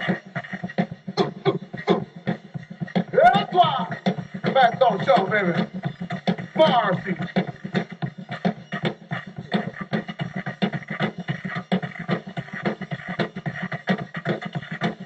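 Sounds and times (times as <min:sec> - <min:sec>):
music with fast busy beat: 0:00.0 - 0:15.0.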